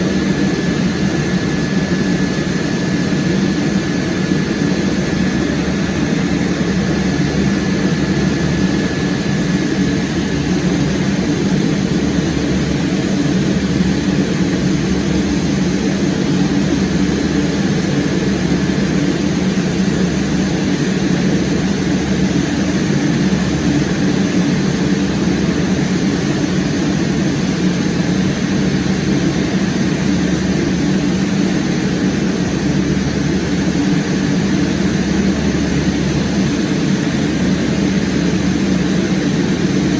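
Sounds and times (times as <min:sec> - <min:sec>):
airliner engine drone: 0:00.0 - 0:39.9.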